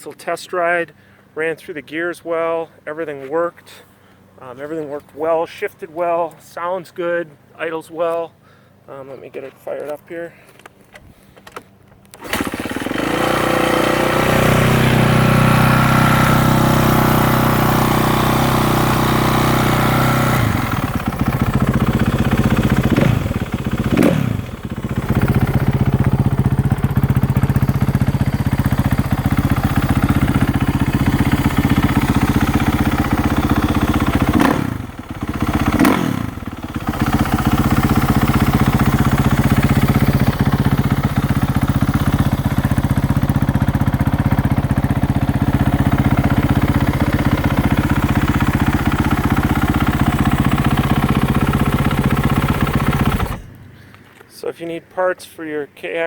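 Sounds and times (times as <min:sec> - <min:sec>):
motorcycle engine idling: 0:12.2 - 0:54.0.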